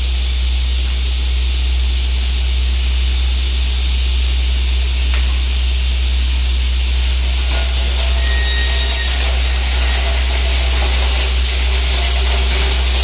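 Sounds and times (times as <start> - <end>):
woodworking machine running: 6.8 - 13.0.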